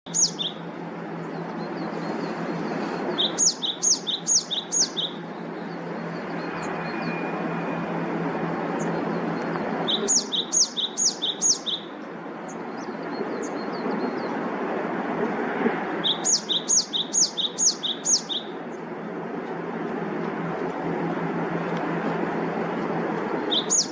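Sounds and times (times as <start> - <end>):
bird chirping: 0.1 - 7.3, 8.8 - 14.3, 16.0 - 18.6, 23.3 - 23.9.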